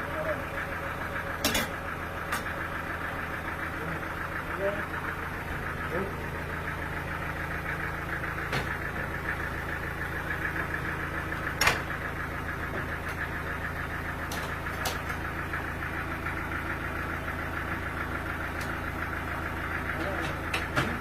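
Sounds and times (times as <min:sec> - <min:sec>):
engine running steadily: 0:00.0 - 0:21.0.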